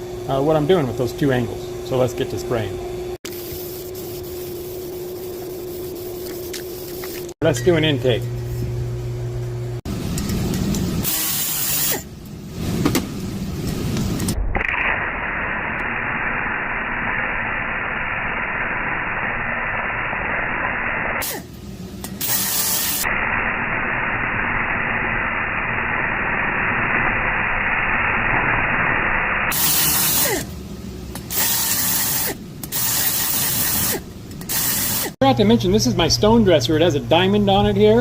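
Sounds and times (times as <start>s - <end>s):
valve seat grinder grinding: 11.0s - 12.1s, 20.8s - 23.1s, 29.5s - 35.2s.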